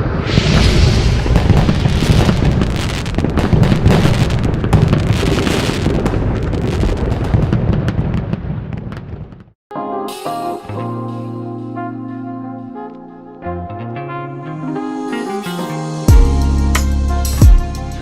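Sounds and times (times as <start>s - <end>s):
deep rumble: 0.0s - 3.5s
firework bangs and crackles: 0.0s - 9.6s.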